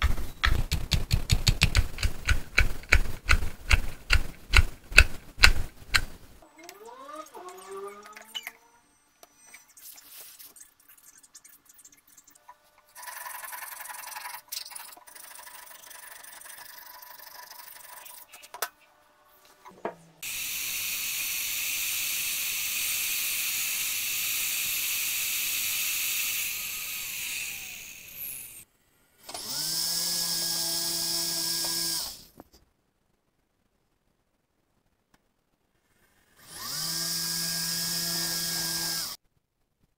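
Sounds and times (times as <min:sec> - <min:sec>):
quiet tool work: 0:00.0 - 0:32.6, 0:35.8 - 0:39.3
power tool motor running: 0:20.2 - 0:28.6, 0:29.3 - 0:32.3, 0:36.4 - 0:39.2.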